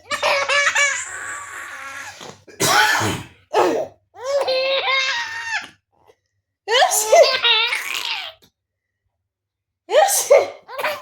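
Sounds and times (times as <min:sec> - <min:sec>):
small child laughing: 0:00.0 - 0:01.9
woman sneezing: 0:09.9 - 0:11.0.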